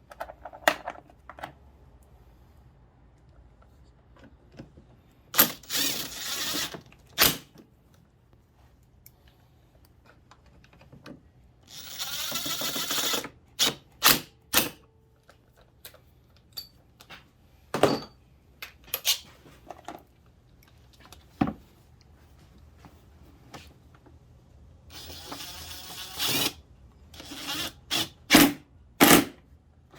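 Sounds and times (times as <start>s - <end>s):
ratchet rasping clicks: 11.6s - 13.8s
tools and metal parts clicking: 15.6s - 17.1s.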